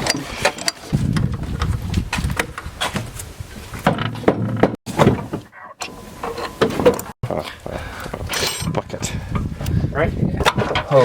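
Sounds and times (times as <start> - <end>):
tools and metal parts clinking: 8.3 - 8.9.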